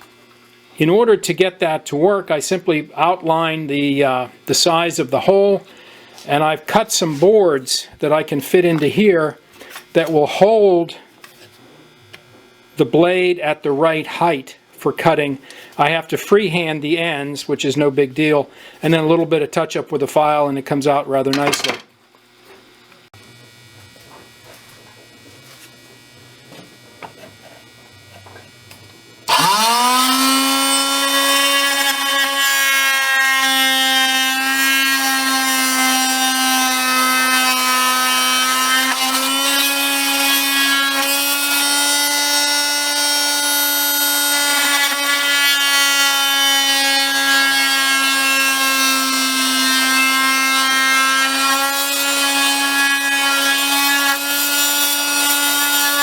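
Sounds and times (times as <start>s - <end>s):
oscillating multi-tool buzzing: 29.2s - 56.0s.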